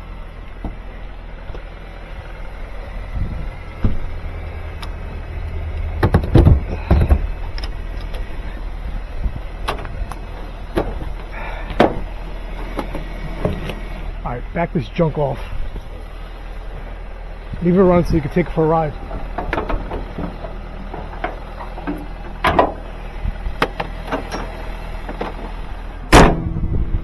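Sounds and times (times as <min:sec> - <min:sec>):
vehicle engine idling: 0:00.0 - 0:27.0
sharp clunks and knocks: 0:03.2 - 0:05.0, 0:05.8 - 0:08.3, 0:09.6 - 0:12.1, 0:19.0 - 0:22.9, 0:23.6 - 0:25.5.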